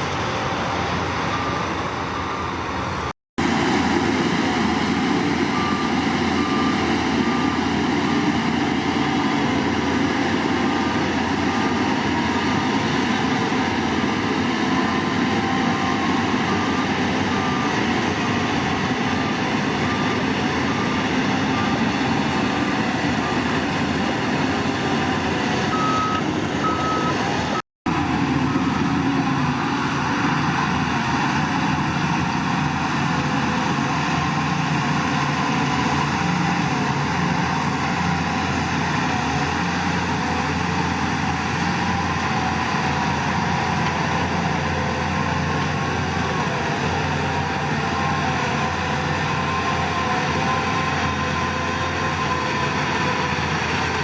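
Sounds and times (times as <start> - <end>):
reversing alarm beeping: 0.0 - 3.1, 4.0 - 23.8, 25.7 - 27.6
diesel machinery running: 0.0 - 54.0.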